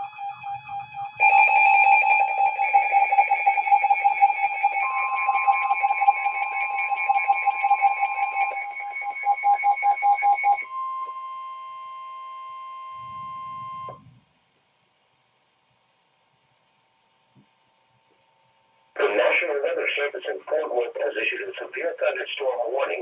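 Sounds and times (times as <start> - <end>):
steady higher electronic tone: 10.4 - 14.2.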